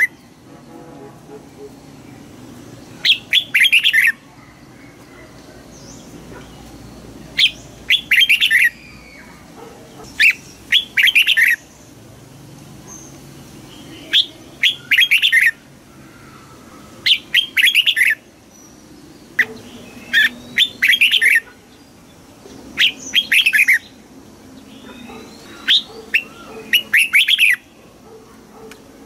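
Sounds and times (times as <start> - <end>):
bird singing bright chirps: 1.9 - 12.0, 12.8 - 28.0.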